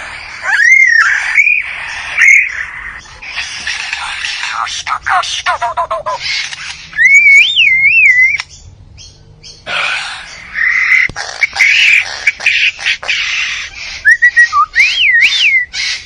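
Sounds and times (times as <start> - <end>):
bird raspy squawking: 0.0 - 16.0
bird whistling call: 0.4 - 3.0, 6.1 - 8.6, 9.7 - 16.0.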